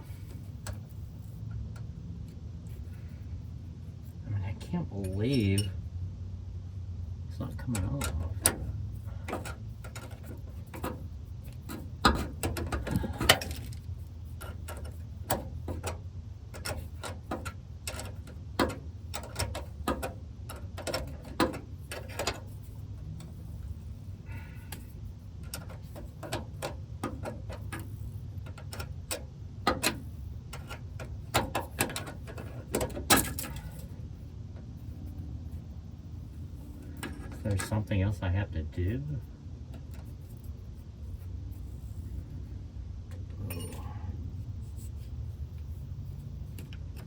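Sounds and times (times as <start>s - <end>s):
steady low hum: 0.0s - 47.0s
metal tools clicking and knocking: 7.7s - 13.8s, 14.4s - 22.5s, 25.4s - 34.0s, 43.1s - 44.0s.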